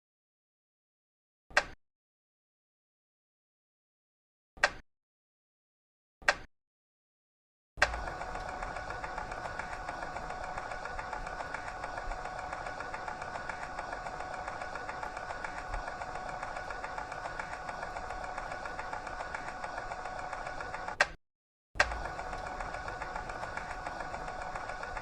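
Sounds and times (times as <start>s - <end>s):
constant hum: 7.8s - 21.0s, 21.8s - 25.0s
tape recorder motor whirring: 7.8s - 21.1s, 21.8s - 25.0s.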